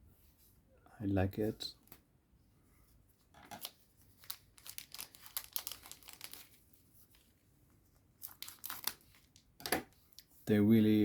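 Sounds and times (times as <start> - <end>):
foil pack crinkling and ripping: 3.6 - 7.2, 8.2 - 9.4.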